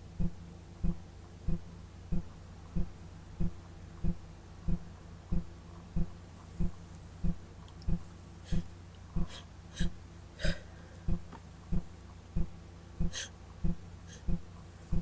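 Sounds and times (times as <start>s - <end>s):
steady low thump: 0.2s - 9.4s, 11.1s - 15.0s
short hitching breaths: 8.4s - 11.3s, 13.0s - 13.4s, 14.1s - 15.0s
woman sniffing: 8.5s - 10.8s, 13.1s - 13.3s, 14.1s - 14.3s.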